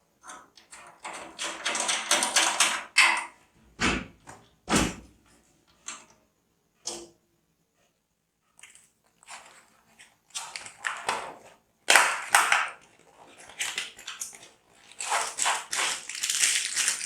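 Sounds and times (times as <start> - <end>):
crinkling and rustling: 8.5 - 17.0.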